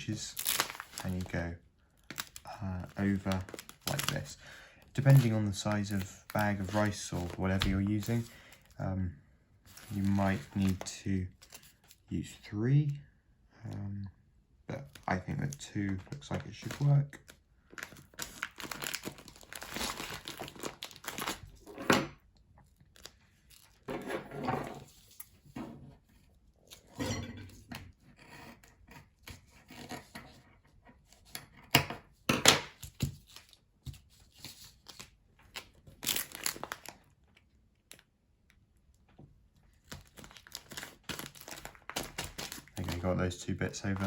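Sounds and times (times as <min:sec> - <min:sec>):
plastic bag crinkling: 0:00.2 - 0:01.4, 0:02.0 - 0:08.8, 0:09.7 - 0:12.0, 0:14.9 - 0:21.7, 0:35.9 - 0:37.1, 0:39.8 - 0:44.0.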